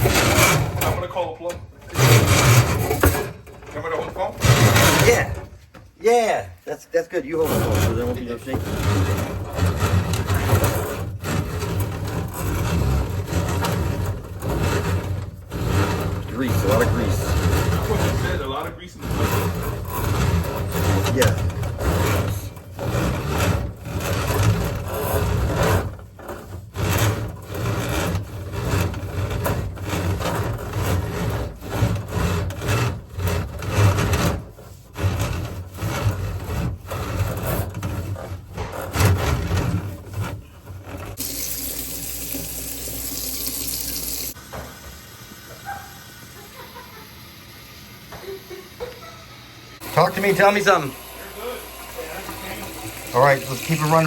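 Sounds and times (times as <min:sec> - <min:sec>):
rubbing and knocking noise: 0:00.0 - 0:41.5, 0:49.8 - 0:54.0
water running into a drain: 0:41.0 - 0:47.8, 0:49.8 - 0:54.0.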